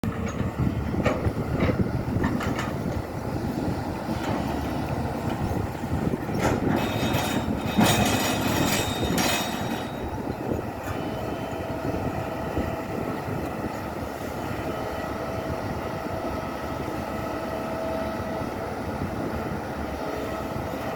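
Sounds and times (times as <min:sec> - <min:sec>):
excavator engine and hydraulic rumble: 0:00.0 - 0:20.9
metal clanks and scrapes: 0:06.4 - 0:10.1.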